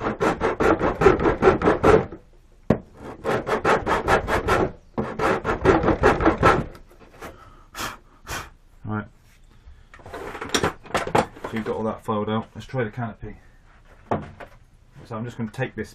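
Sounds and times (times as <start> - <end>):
hand file rasping: 0.0 - 2.2, 3.0 - 6.9.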